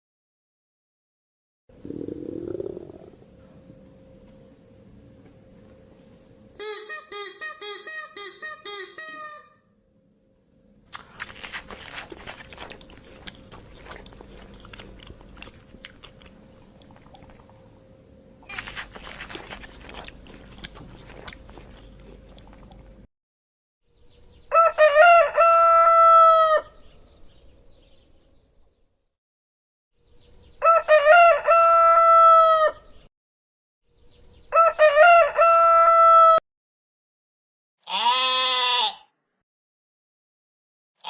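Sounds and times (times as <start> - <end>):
rooster crowing: 24.5 - 26.8, 30.6 - 32.9, 34.5 - 36.4.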